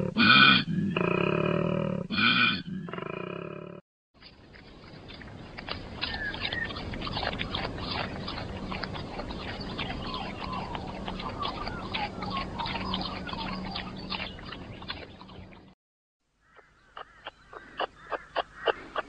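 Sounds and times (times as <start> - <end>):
bird chirps: 4.2 - 15.8, 16.4 - 19.0
koala chewing leaves: 4.2 - 15.8.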